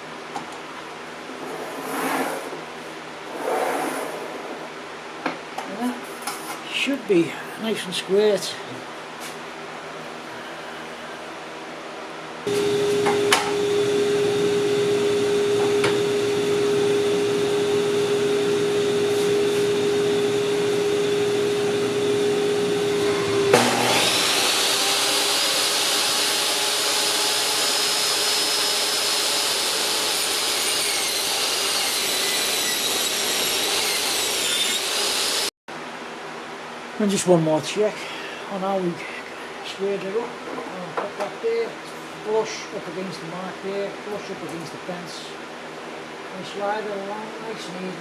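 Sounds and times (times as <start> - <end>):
saw cutting through board: 12.5 - 35.5
table saw motor hum: 12.5 - 35.5.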